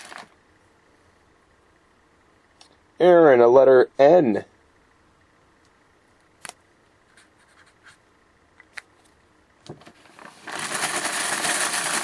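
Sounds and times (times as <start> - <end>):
scratchy rubbing of cards: 7.0 - 8.0, 10.3 - 12.0.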